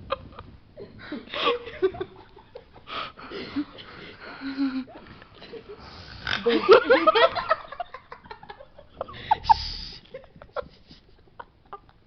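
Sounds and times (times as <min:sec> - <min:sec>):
breathy rush of noise: 0:02.7 - 0:06.6, 0:09.0 - 0:10.1
person giggling: 0:06.4 - 0:12.0.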